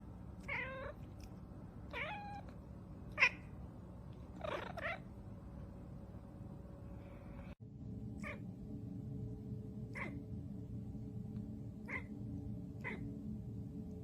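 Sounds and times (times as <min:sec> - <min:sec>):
cat meowing: 0:00.4 - 0:01.1, 0:01.9 - 0:03.5, 0:04.4 - 0:05.1, 0:09.9 - 0:10.2, 0:11.8 - 0:12.1.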